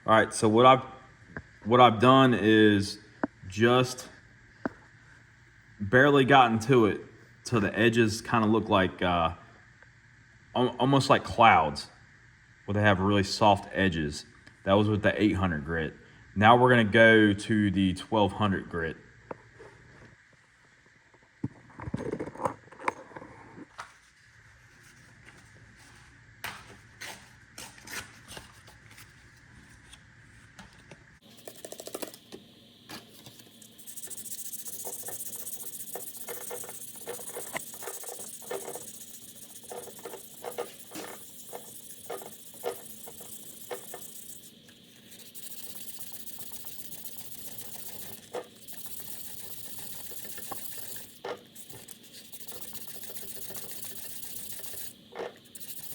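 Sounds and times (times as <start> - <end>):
steady hiss: 31.2 - 55.9
sandpaper scratching metal: 33.1 - 55.9.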